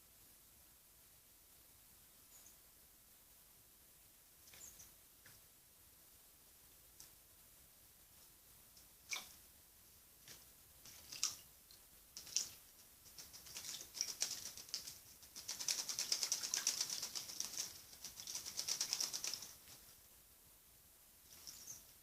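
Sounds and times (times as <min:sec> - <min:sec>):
bird clicking and rustling: 0:12.1 - 0:19.9.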